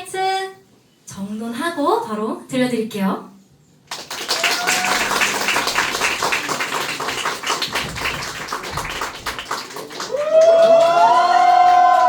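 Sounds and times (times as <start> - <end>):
audience clapping and tapping: 3.9 - 12.0
people cheering: 4.1 - 12.0.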